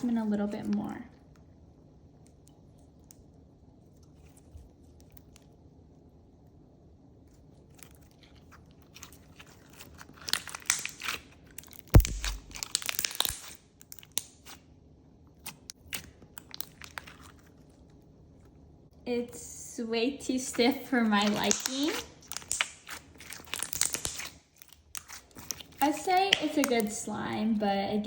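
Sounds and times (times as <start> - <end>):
slime beads crunching: 7.7 - 14.6, 20.3 - 27.1
slime popping: 8.9 - 14.6, 21.1 - 27.0.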